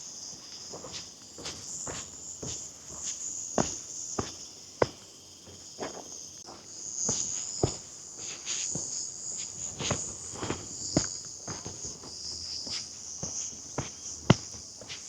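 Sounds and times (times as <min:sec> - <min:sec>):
high-pitched insect chorus: 0:00.0 - 0:15.0
footsteps: 0:00.7 - 0:15.0.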